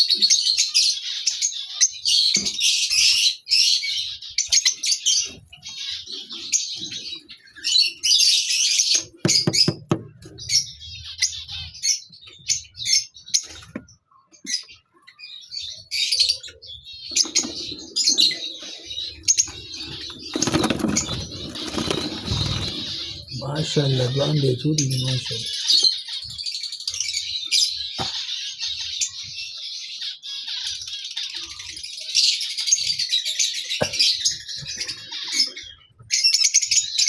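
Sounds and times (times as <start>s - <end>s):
sharp knocks: 9.3s - 10.2s
lovebirds chattering shrilly: 14.5s - 29.2s.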